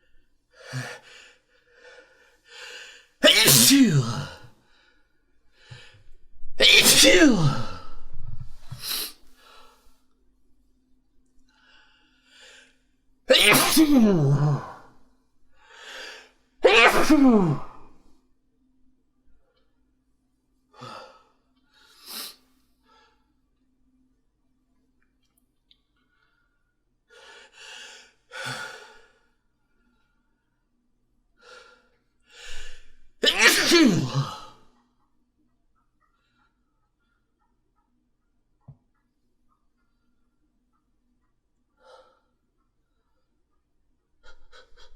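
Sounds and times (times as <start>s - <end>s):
person sneezing: 3.2s - 4.5s, 6.6s - 8.0s, 13.3s - 14.8s, 16.6s - 17.9s, 32.4s - 34.6s.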